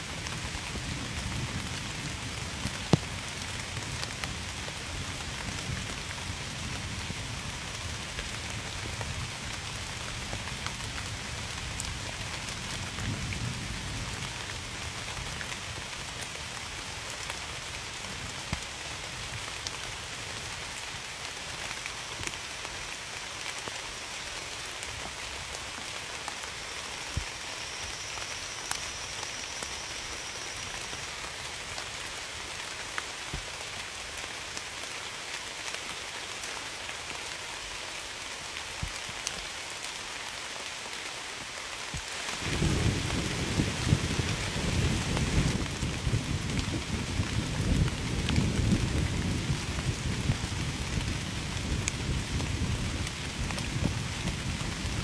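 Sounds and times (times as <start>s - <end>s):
heavy rain: 0.0s - 55.0s
raindrops ticking on surface: 0.0s - 55.0s
distant thunder rumble: 42.4s - 49.2s.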